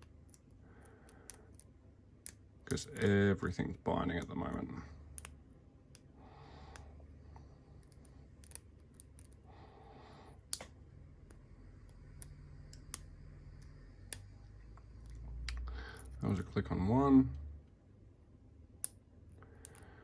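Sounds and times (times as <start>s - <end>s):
lock pick metallic clicks: 7.8s - 9.4s, 19.6s - 19.8s.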